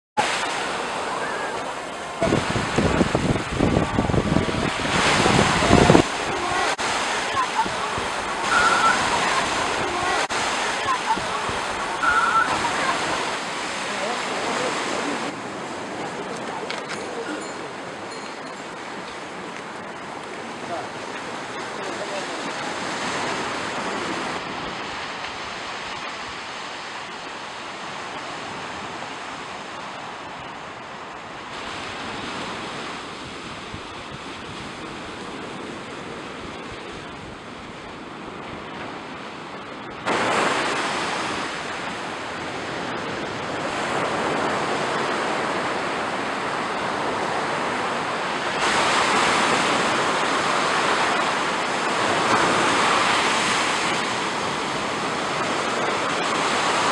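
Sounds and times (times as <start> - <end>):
wind on microphone: 0.2 - 20.3, 31.5 - 56.9
sea surf washing on shore: 0.2 - 56.9.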